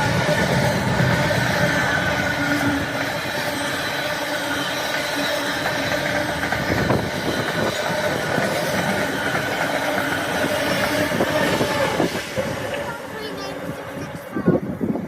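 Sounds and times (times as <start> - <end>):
freight train rumbling past: 0.0 - 15.0.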